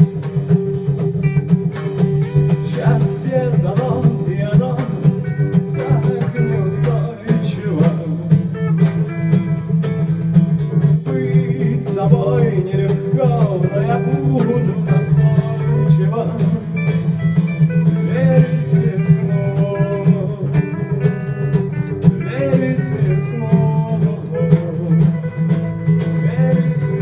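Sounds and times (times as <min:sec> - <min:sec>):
strummed guitar: 0:00.0 - 0:27.0
sustained bass line: 0:00.0 - 0:27.0
person singing: 0:01.9 - 0:09.7, 0:11.0 - 0:27.0.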